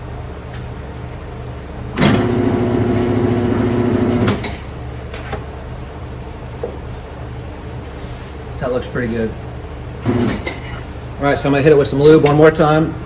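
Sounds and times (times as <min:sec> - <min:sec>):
machine motor humming: 0:00.0 - 0:05.0, 0:08.5 - 0:13.0.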